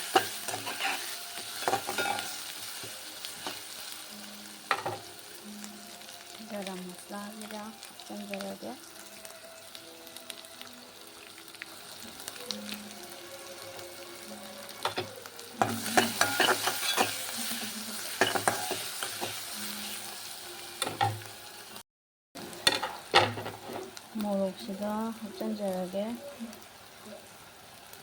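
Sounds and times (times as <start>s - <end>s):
spatula scraping a pan: 0.0s - 3.6s, 14.9s - 20.2s
chicken sizzling in a pan: 0.0s - 21.8s, 22.4s - 28.0s.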